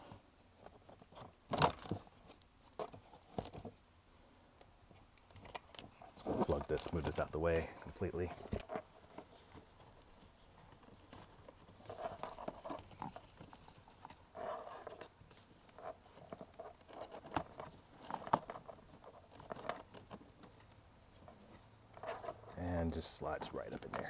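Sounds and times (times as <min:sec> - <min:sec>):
plastic parts clicking and scraping: 0:04.9 - 0:24.0.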